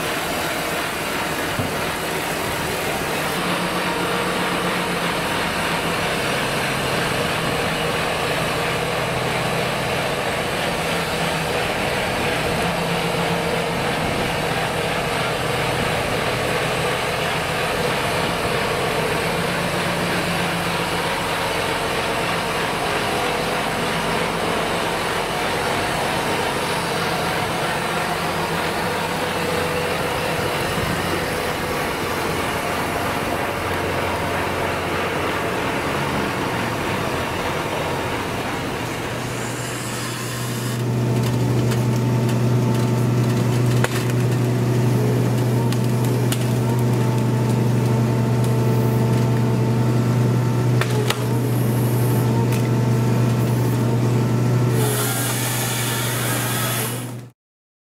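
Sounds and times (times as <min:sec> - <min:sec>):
tractor engines running: 0:00.0 - 0:57.3.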